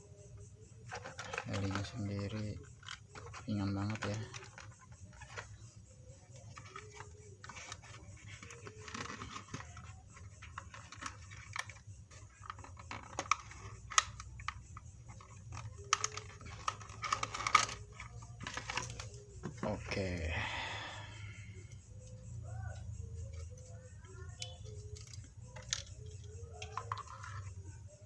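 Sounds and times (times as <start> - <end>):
packaging rustling: 0.9 - 5.6, 6.4 - 14.1, 15.0 - 20.2.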